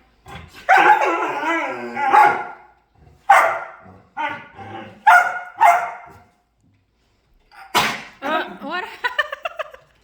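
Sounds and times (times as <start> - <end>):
dog barking: 0.7 - 1.3, 2.0 - 2.7, 3.3 - 6.3.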